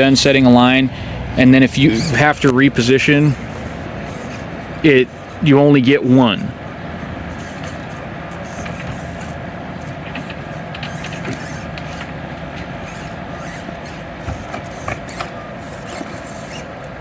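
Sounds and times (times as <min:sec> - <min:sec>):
small electric motor whirring: 0:03.3 - 0:05.4, 0:07.3 - 0:16.8.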